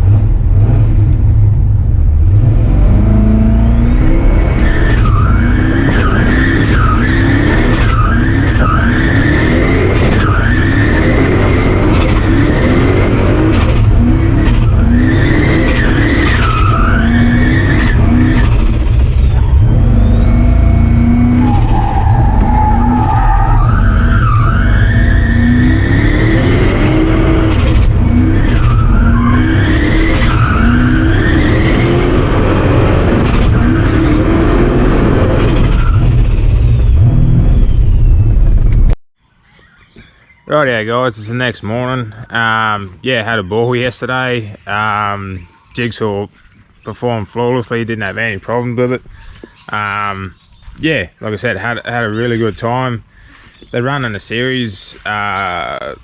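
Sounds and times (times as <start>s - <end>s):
engine revving: 0.0s - 39.0s
tyres squealing: 4.5s - 36.5s.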